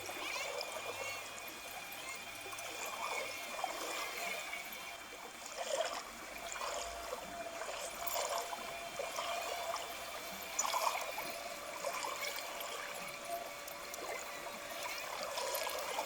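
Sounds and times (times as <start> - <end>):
small ticks and splashes: 0.0 - 16.0
water trickling: 0.0 - 16.0.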